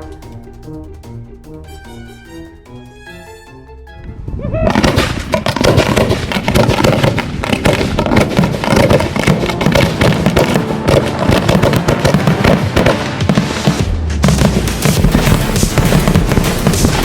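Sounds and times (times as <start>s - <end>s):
music playing: 0.0s - 5.4s, 8.9s - 17.0s
fireworks bangs and crackles: 4.7s - 17.0s.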